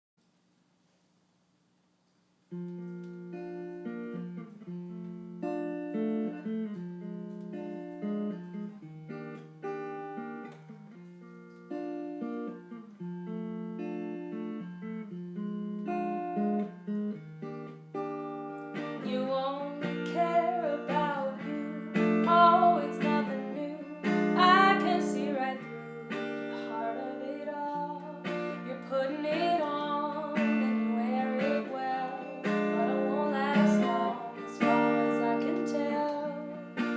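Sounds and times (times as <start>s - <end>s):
acoustic guitar playing: 2.4s - 36.9s
person singing: 19.0s - 36.9s.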